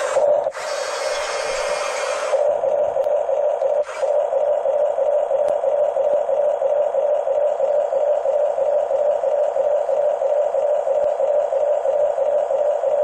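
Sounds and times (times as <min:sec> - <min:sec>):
toy bulldozer motors whirring: 0:00.0 - 0:03.0, 0:03.6 - 0:04.2.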